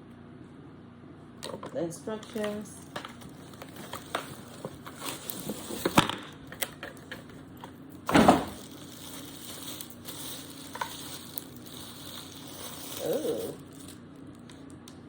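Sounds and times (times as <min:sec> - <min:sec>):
packaging clicks and crinkles: 0:02.2 - 0:15.0
rustling thump: 0:08.1 - 0:12.0.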